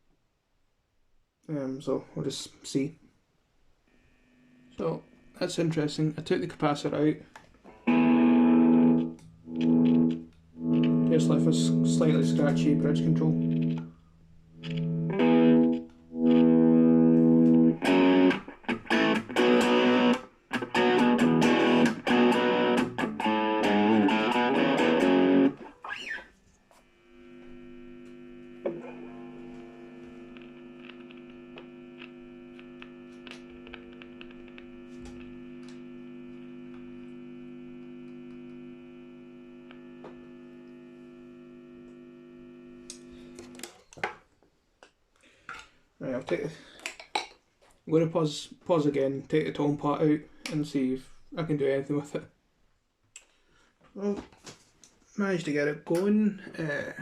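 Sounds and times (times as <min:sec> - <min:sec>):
amp hum: 0:03.8 - 0:44.3
distorted electric guitar strumming: 0:07.7 - 0:26.2, 0:27.1 - 0:43.7.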